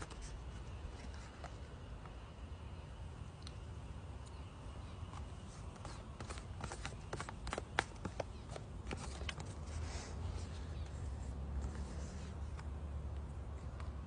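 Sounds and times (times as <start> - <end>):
light rustling of packaging: 0.0 - 2.2, 5.0 - 14.0.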